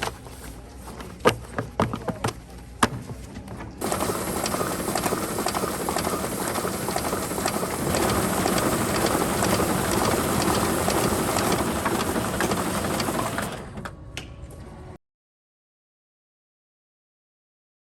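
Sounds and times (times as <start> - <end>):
paper processing machine clattering: 3.8 - 13.7.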